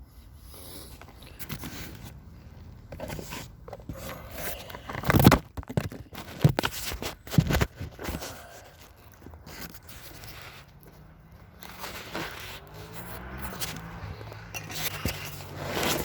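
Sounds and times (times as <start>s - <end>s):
bucket scraping through dirt: 11.6s - 16.0s.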